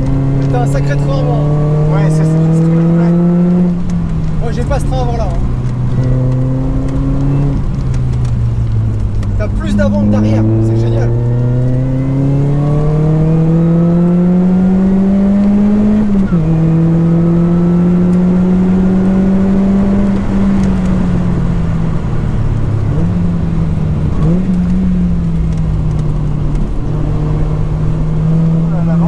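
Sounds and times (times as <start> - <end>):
car engine revving: 0.0 - 29.0.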